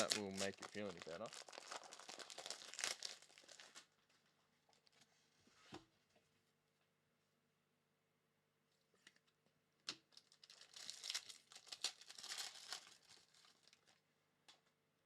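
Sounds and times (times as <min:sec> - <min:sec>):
plastic wrapper crinkling and tearing: 0:00.0 - 0:05.0, 0:09.9 - 0:14.0.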